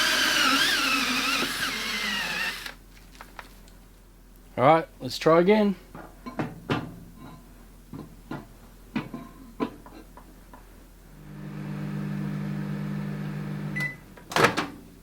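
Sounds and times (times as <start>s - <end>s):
microwave oven humming: 11.2s - 14.1s
microwave beep: 13.7s - 14.0s.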